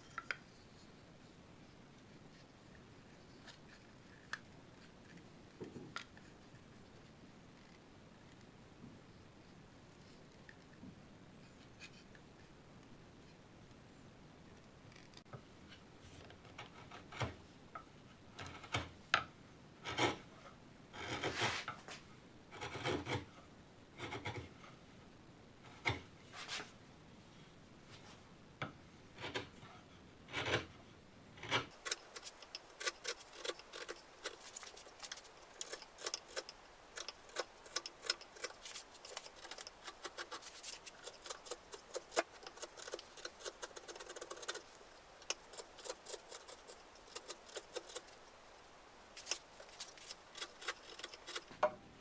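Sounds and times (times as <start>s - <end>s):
hand tool scraping wood: 31.7s - 51.5s.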